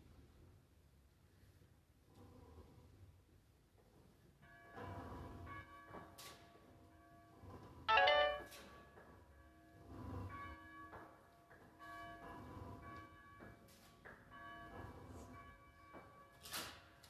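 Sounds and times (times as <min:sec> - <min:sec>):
brief high-pitched sound: 0:07.9 - 0:08.5.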